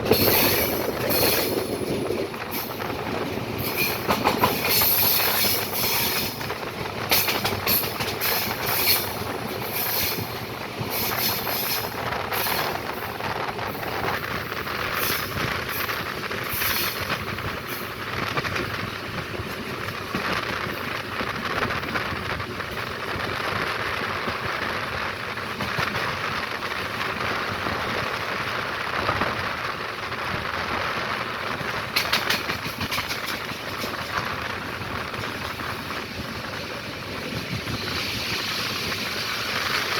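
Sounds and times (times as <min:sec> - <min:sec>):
train wheels rumbling on track: 0:00.0 - 0:39.9
wheels clicking over rail joints: 0:00.0 - 0:39.9.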